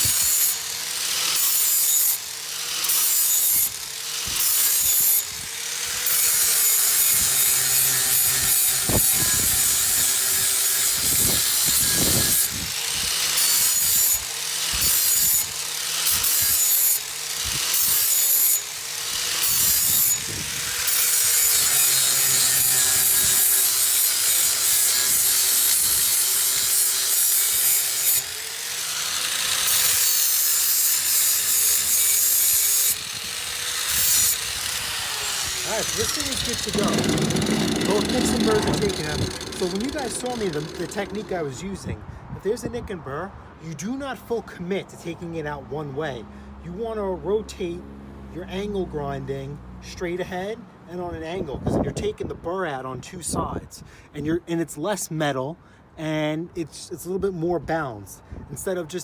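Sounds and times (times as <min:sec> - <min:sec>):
angle grinder grinding steel: 0:00.0 - 0:41.7.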